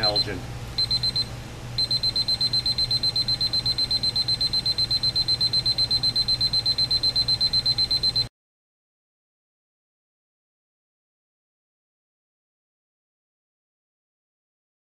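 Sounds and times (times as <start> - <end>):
alarm clock beeping rapidly: 0.0 - 1.2, 1.8 - 8.3.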